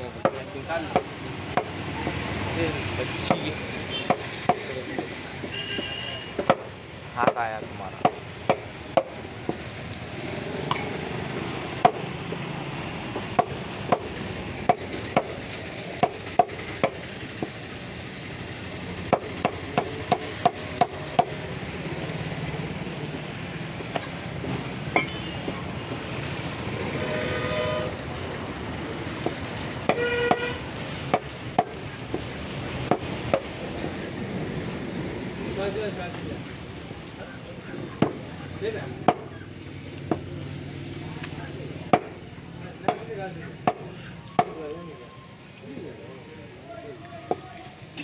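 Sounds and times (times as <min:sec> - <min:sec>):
vehicle horn honking: 0:05.5 - 0:06.4, 0:25.0 - 0:25.5, 0:26.9 - 0:28.0, 0:29.9 - 0:30.6.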